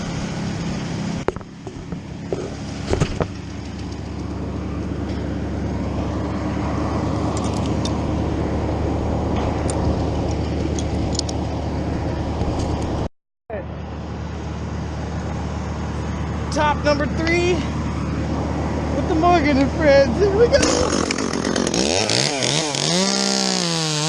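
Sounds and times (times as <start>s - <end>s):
small engine idling: 13.9s - 23.6s.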